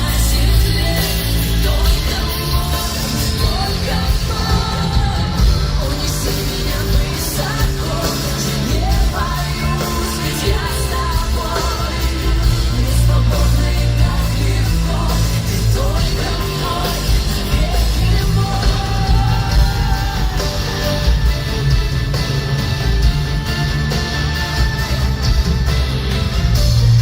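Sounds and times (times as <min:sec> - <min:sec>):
woman singing: 0:00.0 - 0:20.9
live pop music through speakers: 0:00.0 - 0:27.0.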